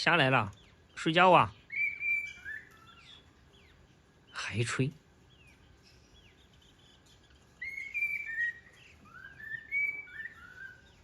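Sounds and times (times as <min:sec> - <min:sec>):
parrot whistling a tune: 0:01.7 - 0:03.2, 0:07.6 - 0:11.0.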